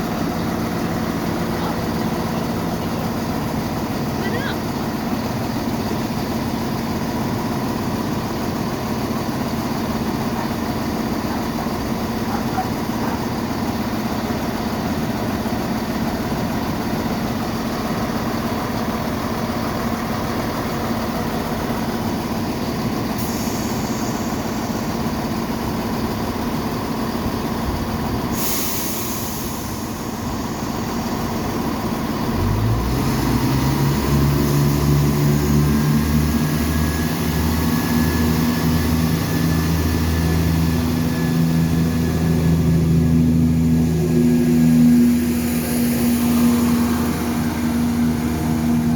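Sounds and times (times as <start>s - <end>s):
diesel train engine humming: 0.0s - 48.9s
air brakes hissing: 23.0s - 26.0s, 28.1s - 32.3s, 43.6s - 48.9s.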